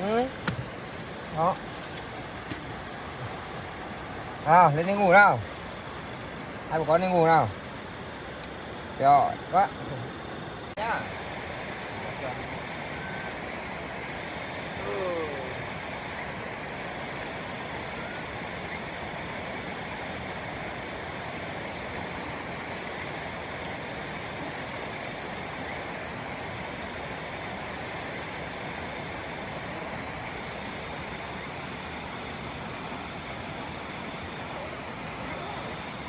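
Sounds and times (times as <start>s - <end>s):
steady rushing noise: 0.0s - 36.0s
faint high steady tones: 8.9s - 36.0s.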